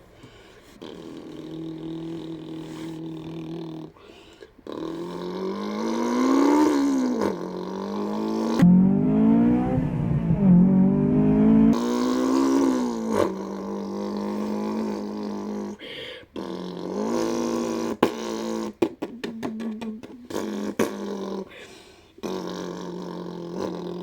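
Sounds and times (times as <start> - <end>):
boy imitating car engine: 4.7 - 15.8.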